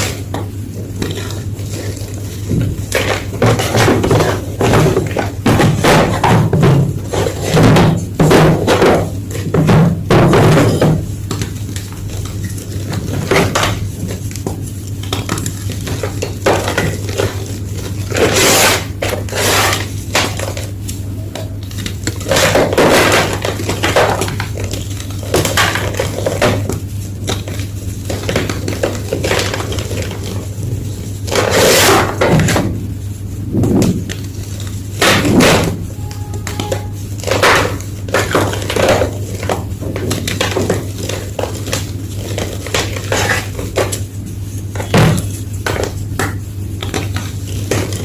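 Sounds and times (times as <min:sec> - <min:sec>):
chalk blocks crunching: 0:11.4 - 0:20.7, 0:21.7 - 0:32.6.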